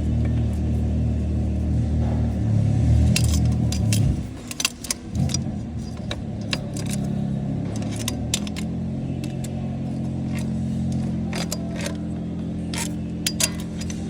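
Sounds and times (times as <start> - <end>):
car engine idling: 0.0 - 14.0
metallic clinks of tools or keys: 3.0 - 14.0.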